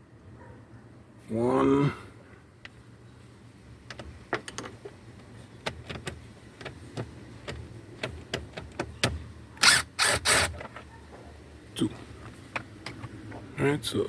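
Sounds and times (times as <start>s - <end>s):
hand tool clicking on screw: 5.7s - 10.6s.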